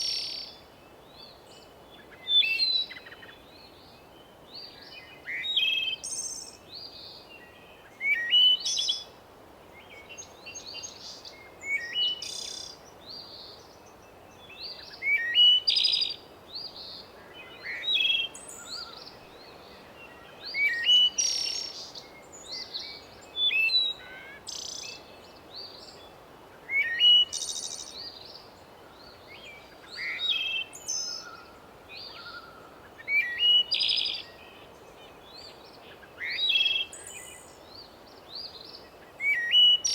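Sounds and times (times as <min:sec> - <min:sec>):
songbirds chirping: 0:09.6 - 0:39.9.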